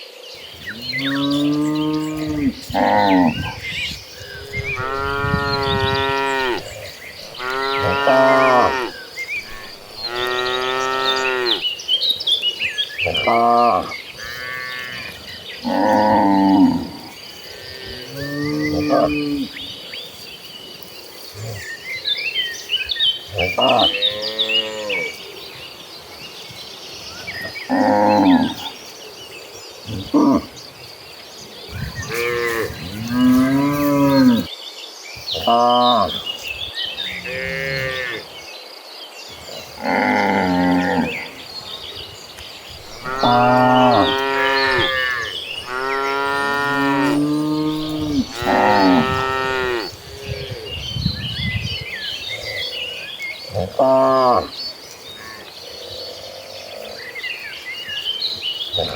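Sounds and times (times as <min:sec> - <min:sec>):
cattle mooing: 0:04.4 - 0:11.6, 0:32.0 - 0:34.5, 0:42.8 - 0:49.9.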